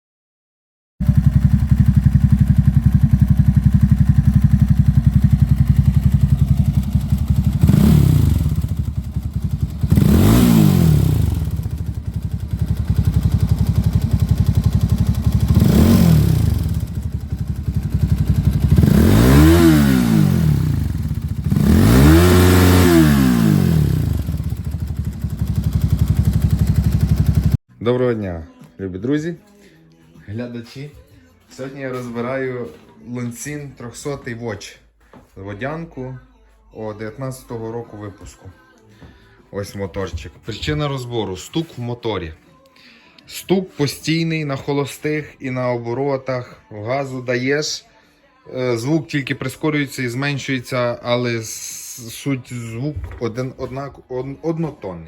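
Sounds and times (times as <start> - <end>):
motorcycle engine idling with knock: 1.0 - 10.0, 10.7 - 18.9, 24.0 - 27.6
engine throttle blips: 1.0 - 27.6.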